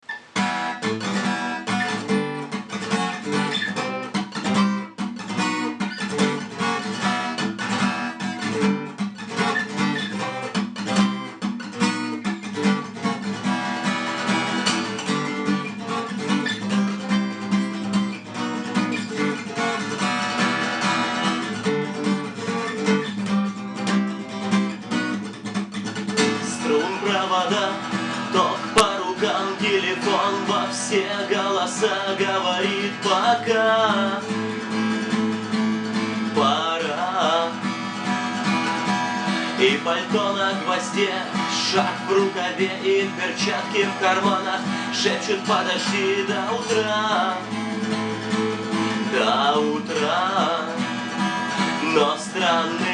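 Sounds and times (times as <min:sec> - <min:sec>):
acoustic guitar strumming chords: 0:00.0 - 0:52.9.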